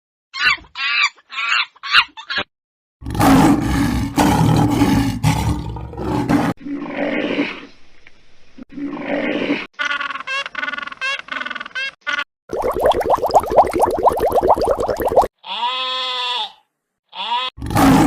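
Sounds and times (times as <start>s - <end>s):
big cat roaring: 3.0s - 7.7s, 17.6s - 18.0s.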